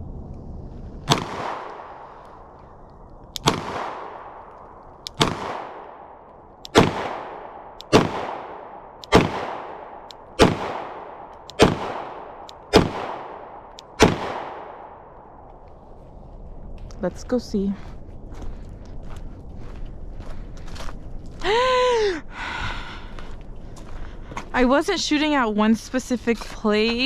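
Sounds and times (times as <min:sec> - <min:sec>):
pistol shots echoing: 0:01.1 - 0:02.0, 0:03.4 - 0:15.1.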